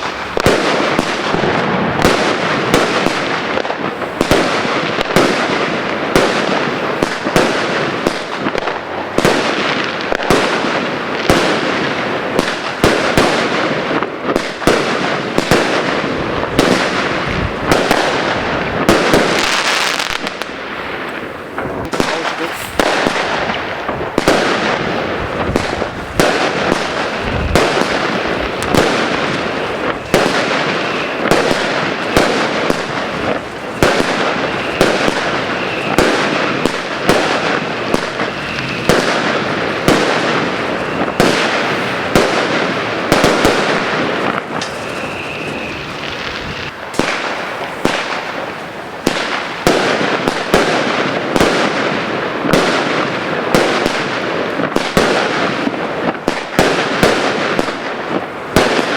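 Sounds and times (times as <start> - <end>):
faint fireworks whistle: 0.0 - 58.9
fireworks crackling: 0.0 - 58.9
fireworks sharp bangs: 0.0 - 58.9.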